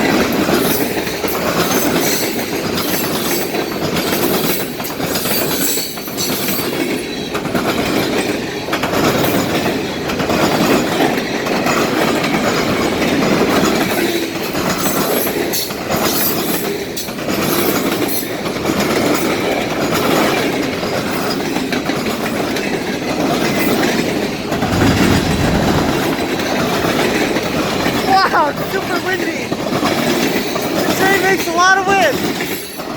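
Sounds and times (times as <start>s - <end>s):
freight train rumbling past: 24.0s - 31.5s.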